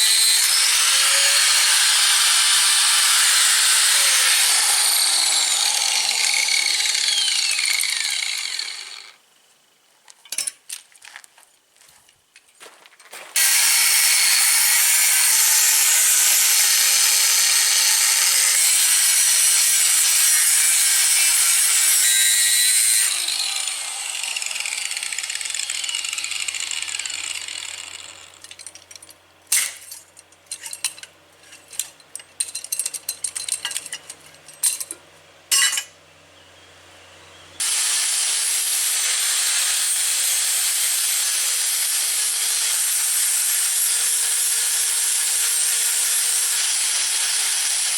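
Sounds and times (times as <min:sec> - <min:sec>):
power tool cutting metal: 0:00.0 - 0:09.2, 0:13.4 - 0:35.9, 0:37.6 - 0:47.9
metal clinks and knocks: 0:28.4 - 0:36.0.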